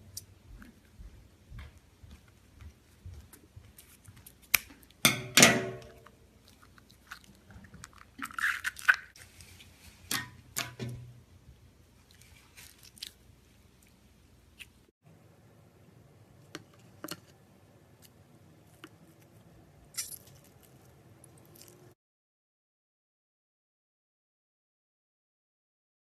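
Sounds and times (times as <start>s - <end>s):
wet slime squishing: 6.0s - 10.8s, 12.0s - 14.8s, 20.2s - 22.0s.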